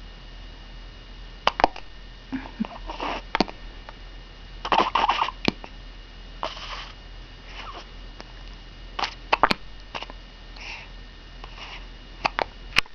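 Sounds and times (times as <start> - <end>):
baby hiccups: 4.6 - 5.7
baby squeaking softly: 4.7 - 5.4, 6.4 - 7.9.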